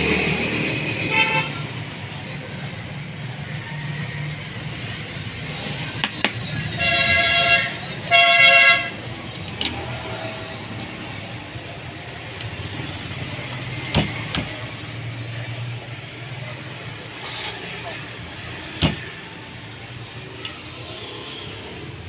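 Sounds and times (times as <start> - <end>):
low traffic rumble: 0.0 - 22.0
vehicle horn honks: 6.7 - 8.9.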